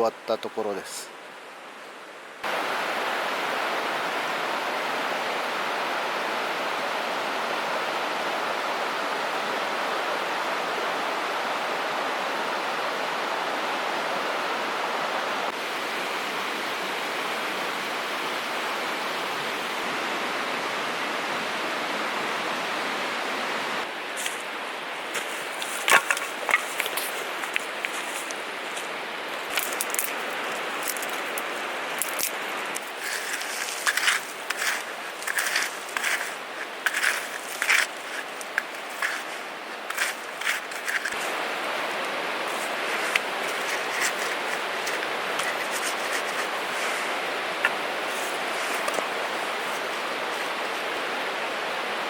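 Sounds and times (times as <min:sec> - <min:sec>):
steady rushing noise: 0:23.5 - 0:51.5
sharp clicks and crackles: 0:29.5 - 0:30.2, 0:30.8 - 0:39.3.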